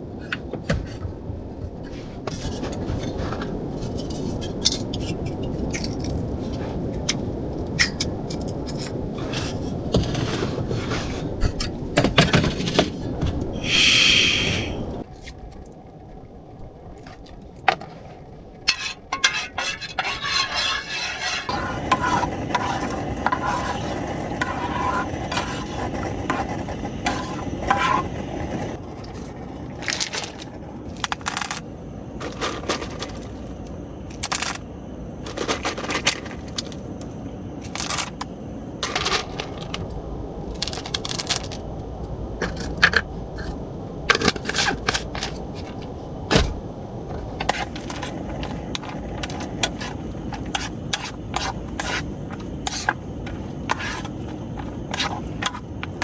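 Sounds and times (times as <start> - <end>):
hard objects clinking and scraping: 18.7 - 34.6, 47.5 - 56.0
steady rushing noise: 20.4 - 39.0.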